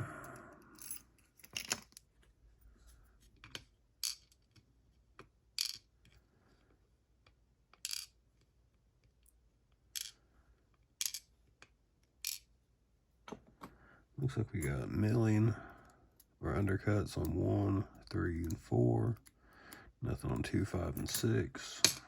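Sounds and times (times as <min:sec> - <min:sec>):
light metallic clinks of pins: 0:00.7 - 0:02.0.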